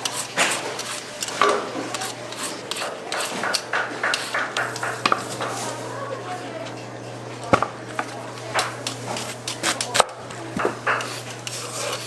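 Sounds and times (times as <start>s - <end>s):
utensil scraping in metal pot: 0.0s - 3.6s, 10.9s - 12.0s.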